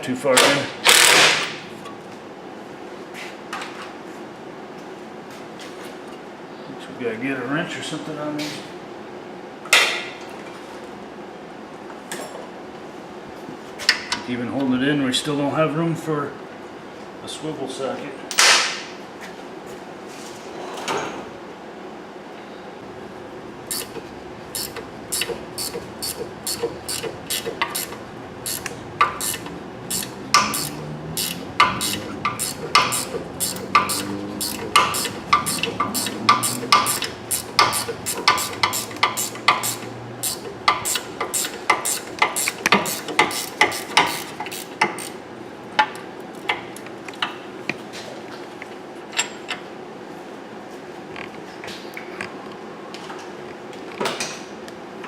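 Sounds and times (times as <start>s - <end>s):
ratchet wrench clicking: 0.9s - 1.6s, 23.7s - 45.2s.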